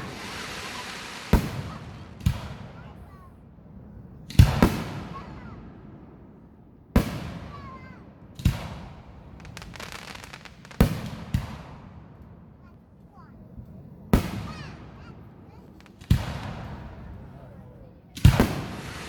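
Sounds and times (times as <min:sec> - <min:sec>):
firework crackles: 0:00.0 - 0:03.4, 0:07.0 - 0:12.0, 0:14.2 - 0:19.0
fireworks bangs with echo: 0:00.0 - 0:13.3, 0:14.0 - 0:19.0.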